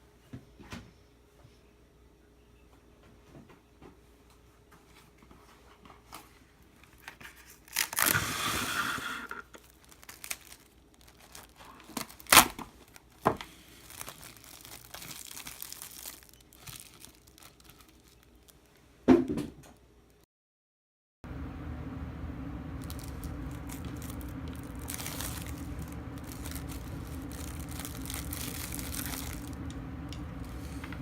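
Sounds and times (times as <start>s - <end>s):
sheet being torn and crinkled: 7.0s - 8.5s, 9.4s - 18.6s, 22.8s - 29.6s.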